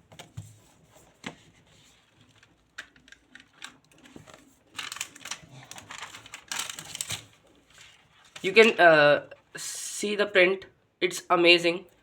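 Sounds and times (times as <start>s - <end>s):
pages turning: 0.1s - 8.8s.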